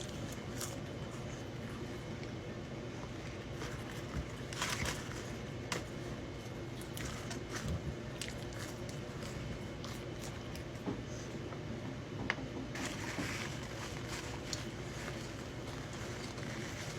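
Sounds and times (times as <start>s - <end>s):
person chewing food: 0.0s - 11.4s.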